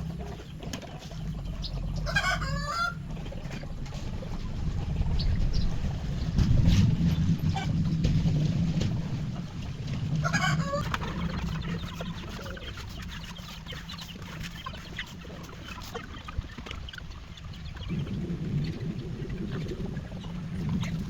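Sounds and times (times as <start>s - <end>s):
low rumble: 0.0s - 12.8s
chickens clucking: 0.0s - 21.0s.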